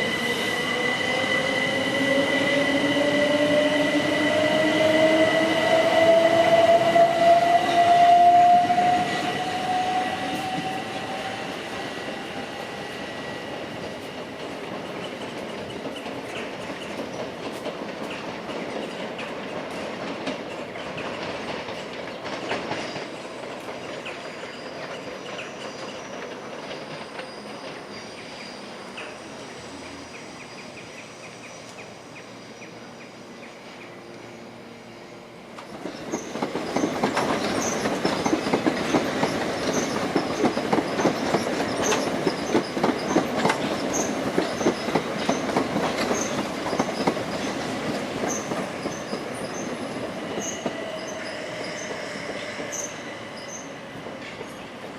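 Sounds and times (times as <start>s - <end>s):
train wheels clattering on track: 0.0s - 31.9s, 35.5s - 54.9s.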